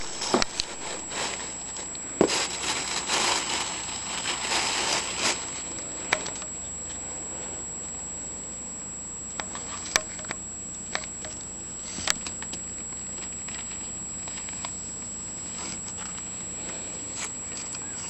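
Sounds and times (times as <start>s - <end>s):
rustling and scratching in a basket: 0.0s - 6.4s, 12.9s - 18.0s.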